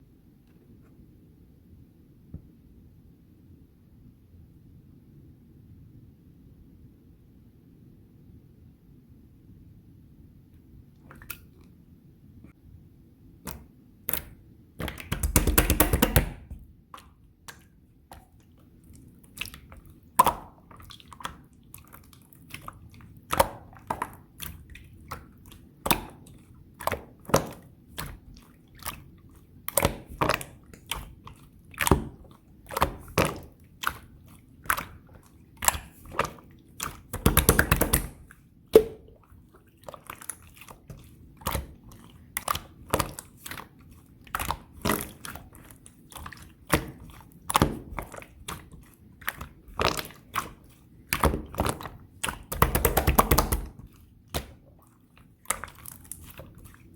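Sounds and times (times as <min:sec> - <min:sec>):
sticky slime pops and clicks: 0:13.4 - 0:16.6, 0:37.1 - 0:39.1
slime crackling: 0:14.1 - 0:56.9.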